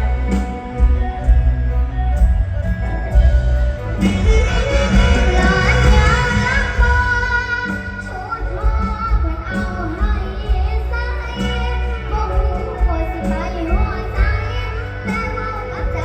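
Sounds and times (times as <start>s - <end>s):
backing music with heavy bass beat: 0.0s - 9.2s
girl singing: 4.0s - 16.0s.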